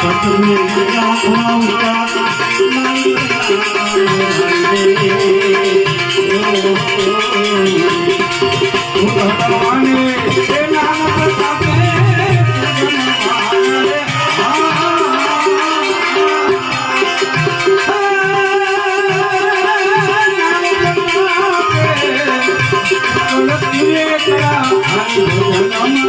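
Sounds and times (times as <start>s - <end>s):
hand-drum beats: 0.0s - 26.0s
wavering melody line: 0.0s - 26.0s.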